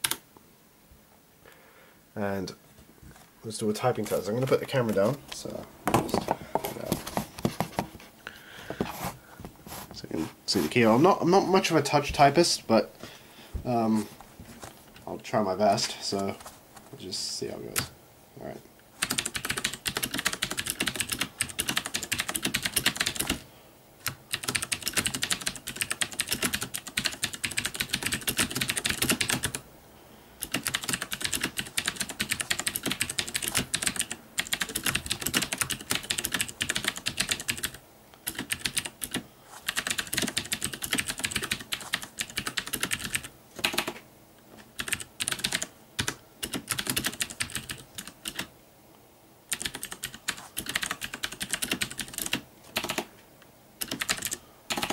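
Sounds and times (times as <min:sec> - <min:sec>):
mechanical keyboard typing: 0:00.0 - 0:00.2, 0:19.0 - 0:23.4, 0:24.0 - 0:29.6, 0:30.4 - 0:44.0, 0:44.8 - 0:48.5, 0:49.5 - 0:53.1, 0:53.8 - 0:54.9.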